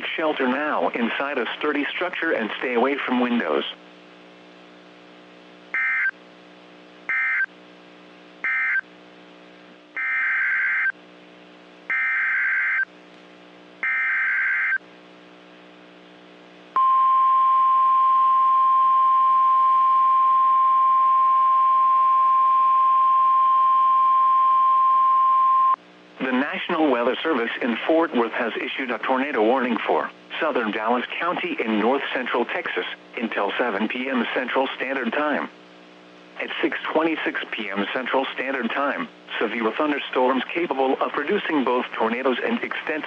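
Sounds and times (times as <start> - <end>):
steady alarm tone: 5.8 - 6.1, 7.1 - 7.5, 8.4 - 8.8, 10.0 - 11.0, 11.9 - 12.9, 13.8 - 14.8.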